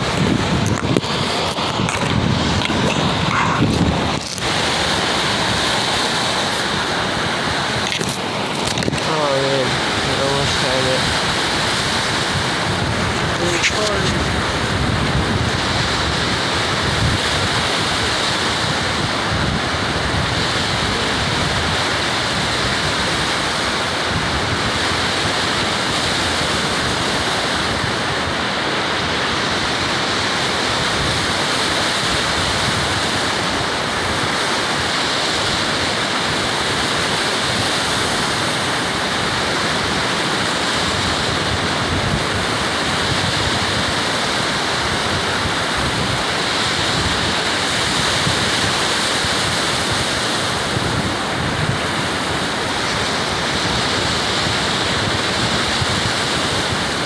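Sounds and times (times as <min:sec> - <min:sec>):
ocean surf breaking: 0:00.0 - 0:57.0
wind gusting on microphone: 0:00.0 - 0:57.0.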